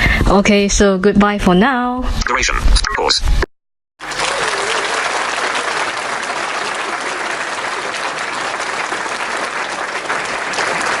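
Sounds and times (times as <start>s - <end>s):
applause: 4.0s - 11.0s.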